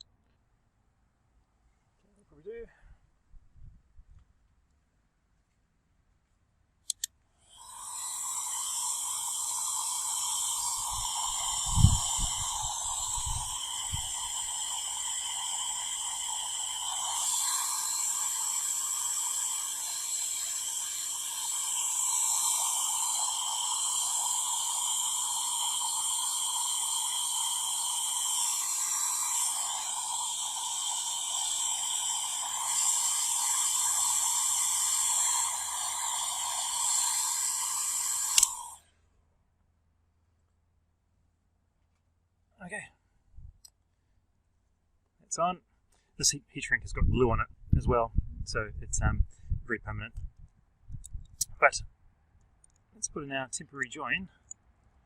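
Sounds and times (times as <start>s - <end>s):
heat gun blowing hot air: 7.0s - 38.8s.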